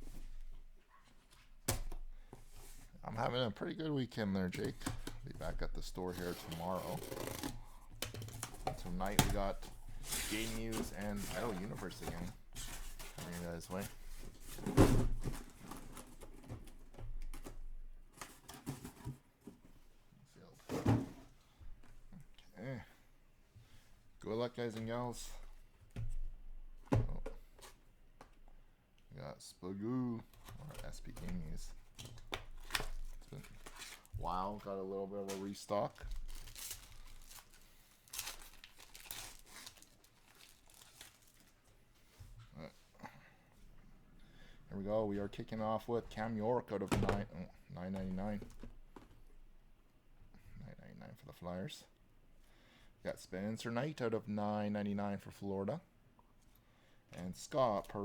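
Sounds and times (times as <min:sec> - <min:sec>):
packaging clicks and rustles: 0:04.5 - 0:19.1, 0:30.3 - 0:34.6, 0:35.2 - 0:41.7
plastic wrapping crinkling and tearing: 0:04.8 - 0:14.4, 0:31.4 - 0:41.8.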